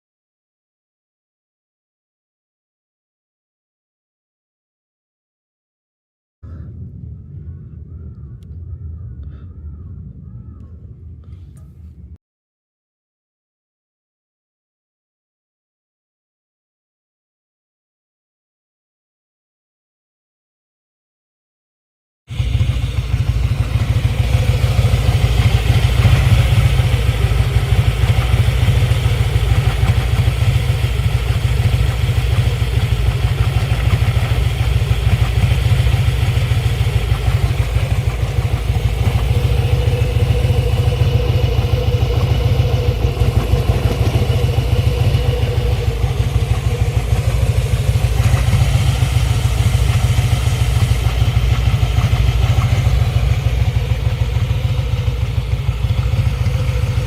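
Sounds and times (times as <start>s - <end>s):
engine clatter: 22.3s - 57.0s
motorcycle engine running: 22.3s - 57.0s.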